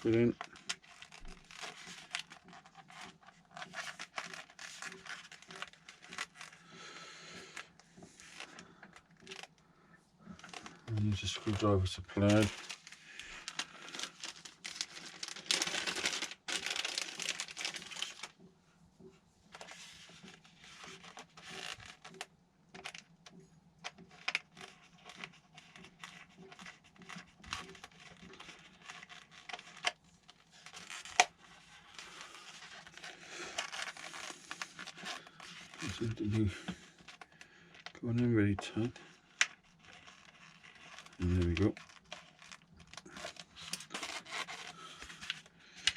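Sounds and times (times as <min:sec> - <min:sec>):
foam and plastic rustling: 0:10.3 - 0:18.4, 0:24.1 - 0:45.9.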